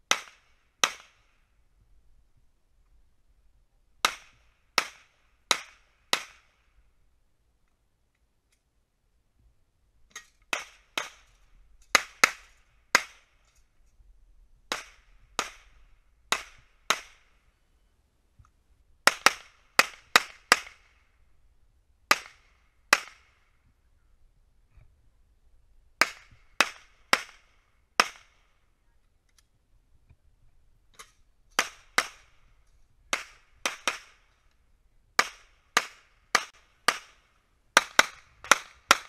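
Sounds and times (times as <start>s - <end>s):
pistol shots: 37.8s - 39.0s.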